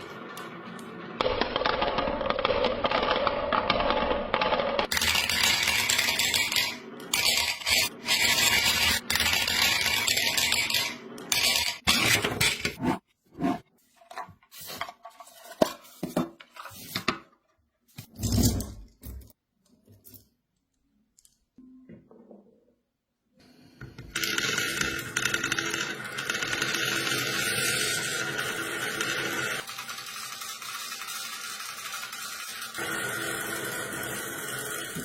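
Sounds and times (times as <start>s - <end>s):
marbles rattling on toy track: 1.5s - 11.8s, 24.2s - 35.0s.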